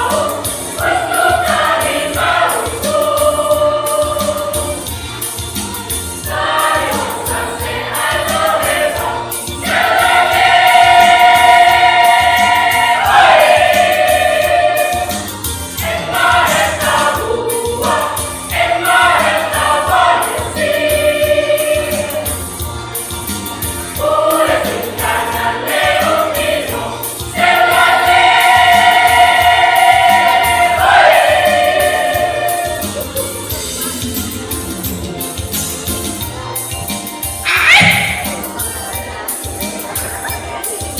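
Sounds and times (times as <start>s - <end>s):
church choir singing a hymn: 0.0s - 4.9s, 6.3s - 22.4s, 24.0s - 33.6s.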